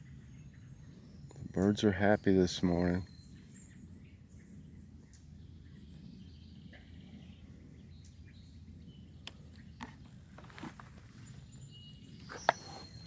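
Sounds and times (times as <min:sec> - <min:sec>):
birds chirping faintly: 0:00.0 - 0:13.0.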